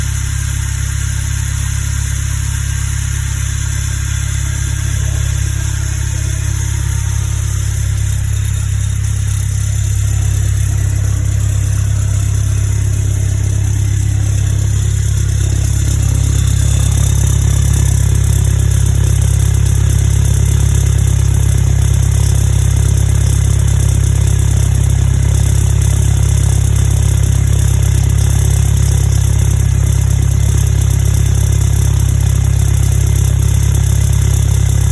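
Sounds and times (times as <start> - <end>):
car engine idling with misfire: 0.0 - 34.9.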